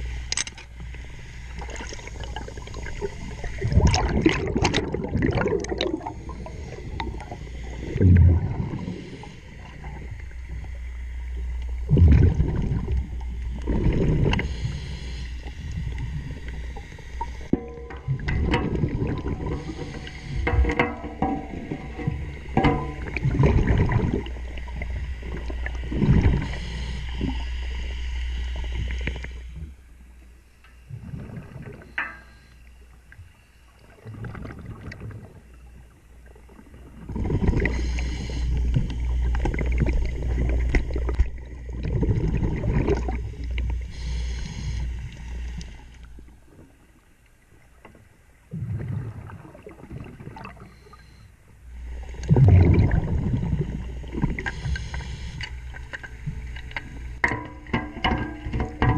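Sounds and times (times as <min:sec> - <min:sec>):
underwater regulator bubbling: 0:01.6 - 0:10.5, 0:11.5 - 0:29.8, 0:36.6 - 0:45.7, 0:51.9 - 0:58.9
tools knocking on metal underwater: 0:17.5 - 0:23.2, 0:57.2 - 0:58.9.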